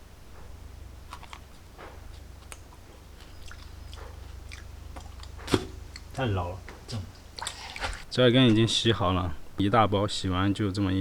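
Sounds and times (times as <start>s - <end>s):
person chewing crunchy root: 1.0s - 6.2s, 7.3s - 8.1s.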